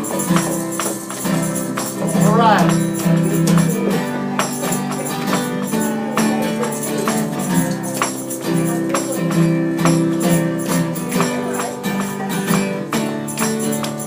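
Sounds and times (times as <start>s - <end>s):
hand percussion and shakers: 0.0s - 14.0s
tambourine jingling: 0.0s - 14.0s.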